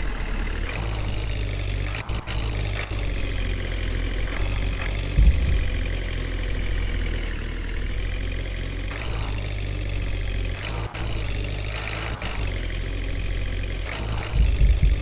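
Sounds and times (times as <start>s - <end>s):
heavy diesel engine running: 0.0s - 15.0s
low thump: 5.0s - 7.0s.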